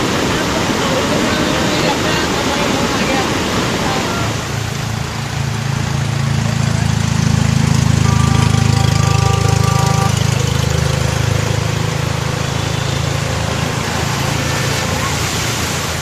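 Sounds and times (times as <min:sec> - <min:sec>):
engine running: 0:00.0 - 0:16.0
steady tone: 0:05.4 - 0:15.0.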